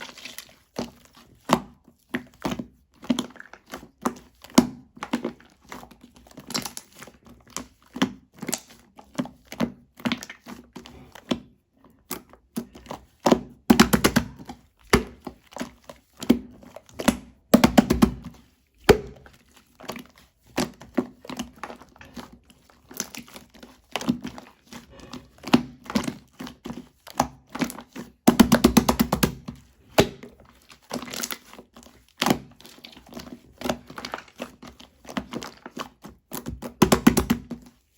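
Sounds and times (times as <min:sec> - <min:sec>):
slime squeezed by hand: 0:00.0 - 0:01.2.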